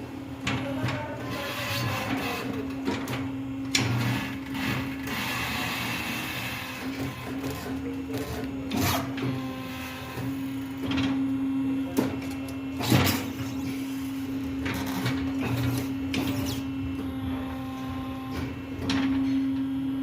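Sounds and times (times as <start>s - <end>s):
electric motor hum: 0.6s - 12.0s, 12.6s - 18.8s.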